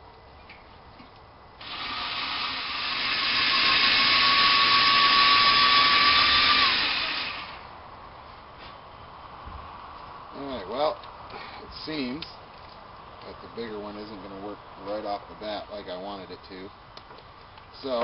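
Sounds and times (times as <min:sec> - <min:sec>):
power drill whining: 0:01.6 - 0:07.7.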